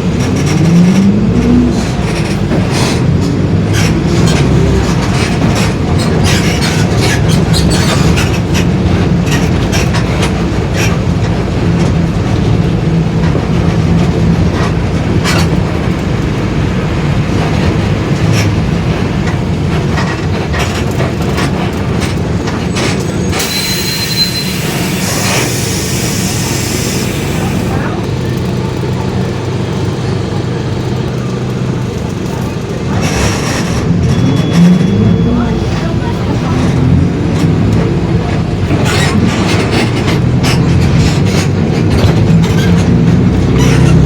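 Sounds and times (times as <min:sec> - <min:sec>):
body rattles and clicks: 0:00.0 - 0:23.5, 0:35.6 - 0:44.0
bus engine drone: 0:00.0 - 0:44.0
high whistle: 0:23.4 - 0:24.9.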